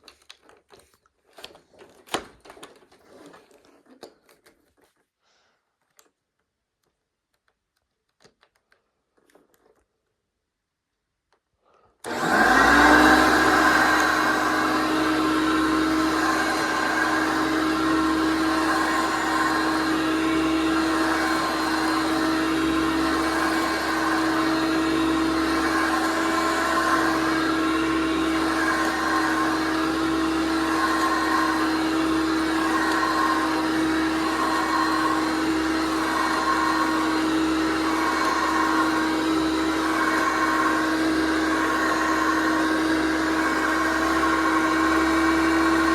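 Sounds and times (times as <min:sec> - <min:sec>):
vacuum cleaner motor humming: 0:12.0 - 0:45.9.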